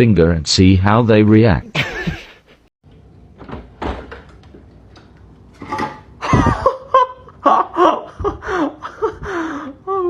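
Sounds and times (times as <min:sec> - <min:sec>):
person laughing: 0:01.7 - 0:02.6, 0:06.2 - 0:10.0.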